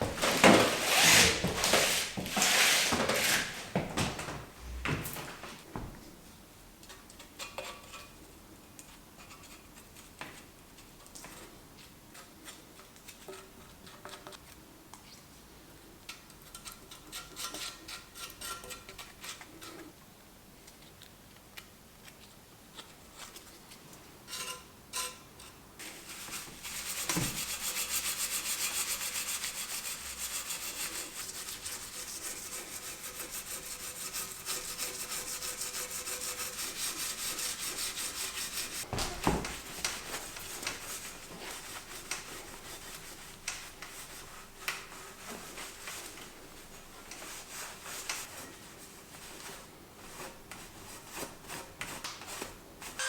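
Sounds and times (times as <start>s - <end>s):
fast back-and-forth rubbing: 0.2s - 3.7s, 25.8s - 38.9s.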